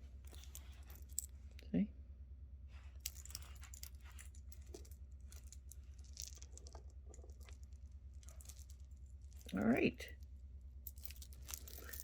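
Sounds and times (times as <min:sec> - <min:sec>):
steady low hum: 0:00.0 - 0:12.0
jewelry beads and chain rattling: 0:00.2 - 0:01.4, 0:03.0 - 0:12.0.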